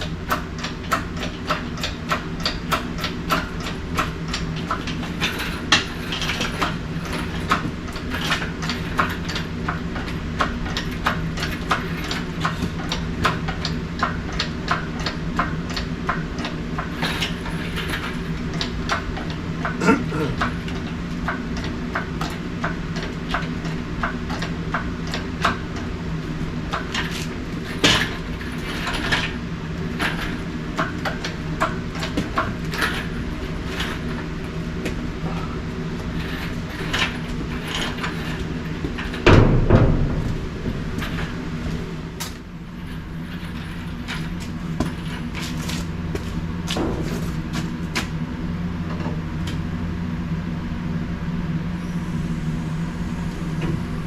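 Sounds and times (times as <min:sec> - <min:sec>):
low mechanical hum: 0:00.0 - 0:54.0
loud thump: 0:39.3 - 0:40.9.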